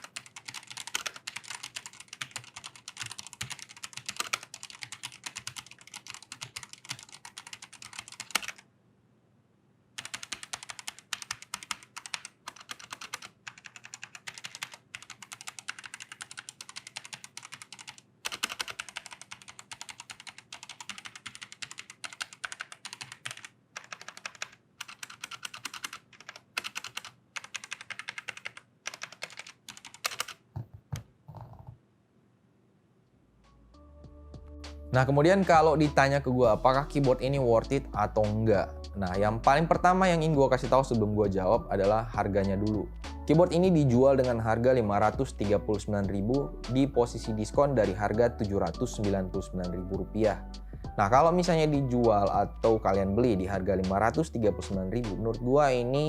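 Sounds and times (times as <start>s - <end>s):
mechanical keyboard typing: 0.0s - 8.6s, 10.0s - 30.4s.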